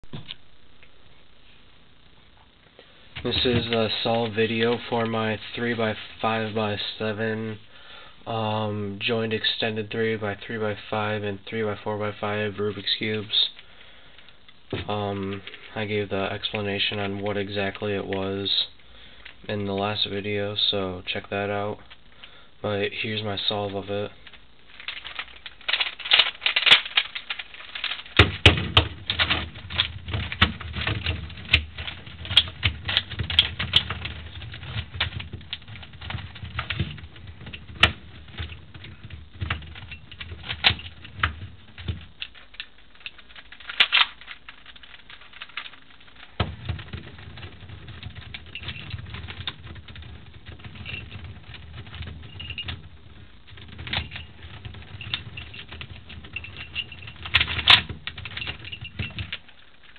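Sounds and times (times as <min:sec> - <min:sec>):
plastic puzzle clicking when turned: 0:24.2 - 0:52.8.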